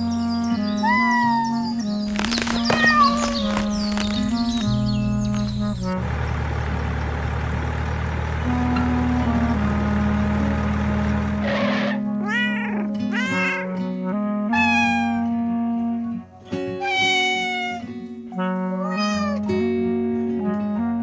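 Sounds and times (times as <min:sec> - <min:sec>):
background music: 0:00.0 - 0:06.8, 0:08.1 - 0:21.0
cat meowing: 0:00.8 - 0:01.8, 0:02.6 - 0:03.7, 0:11.8 - 0:13.8, 0:14.5 - 0:15.4, 0:16.7 - 0:18.0, 0:18.7 - 0:19.5.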